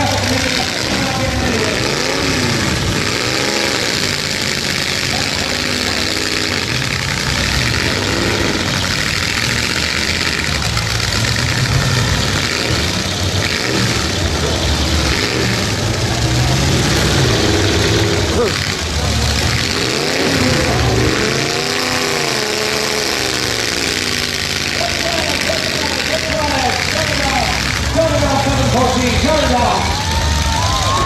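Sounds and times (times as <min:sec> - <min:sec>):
truck engines revving: 0:00.0 - 0:31.0.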